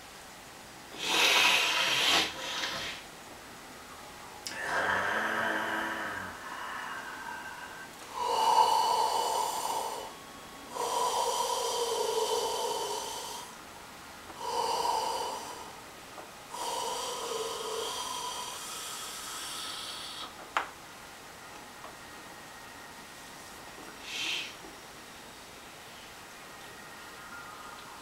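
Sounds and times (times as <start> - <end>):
person breathing deeply: 4.5 - 13.6, 14.4 - 15.8, 16.5 - 20.4, 24.0 - 24.6.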